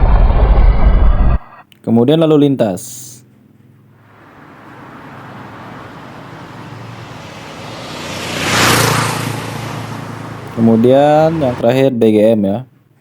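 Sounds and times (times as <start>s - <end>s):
road vehicle passing by: 3.3s - 11.8s.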